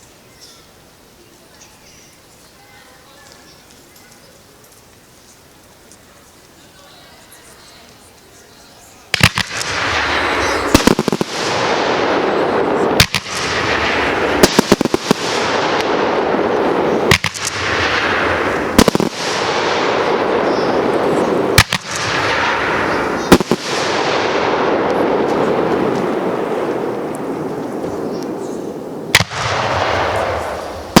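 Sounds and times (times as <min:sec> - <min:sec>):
continuous rush of noise: 0:00.0 - 0:31.0
fireworks bangs: 0:09.0 - 0:31.0.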